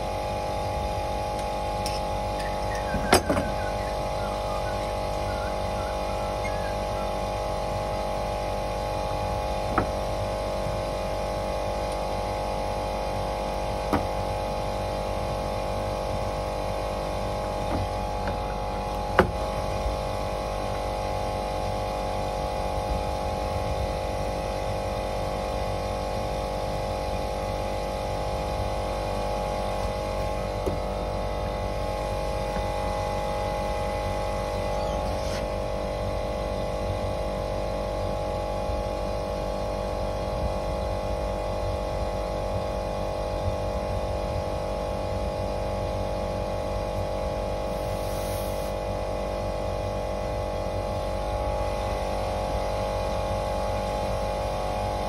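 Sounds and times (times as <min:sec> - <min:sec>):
air conditioner humming: 0:00.0 - 0:25.0, 0:26.5 - 0:38.8.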